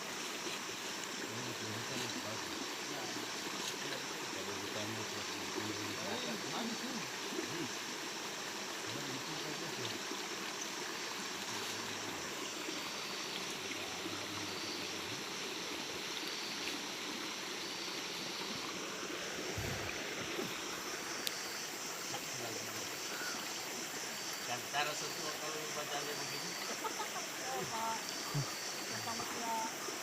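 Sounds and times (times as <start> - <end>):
stream water flowing: 0.0 - 30.0.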